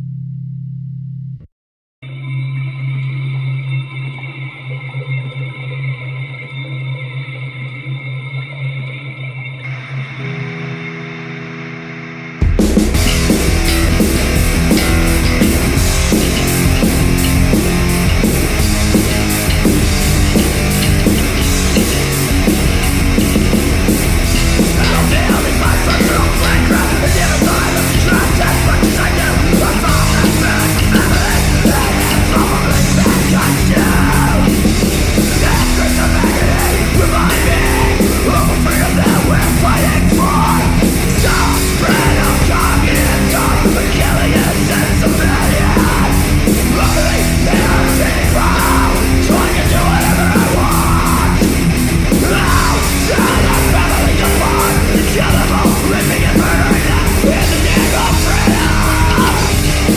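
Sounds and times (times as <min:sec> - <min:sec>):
distorted guitar and bass: 0:00.0 - 0:59.9
pounding drums: 0:12.4 - 0:59.9
shouted vocals: 0:14.1 - 0:59.9.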